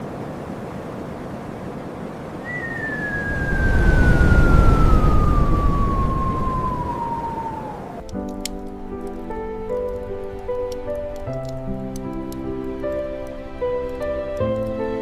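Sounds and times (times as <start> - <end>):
storm wind gusting: 0.0 - 15.0
whistling tone sliding down: 2.4 - 8.2
gentle music with held notes: 7.6 - 15.0.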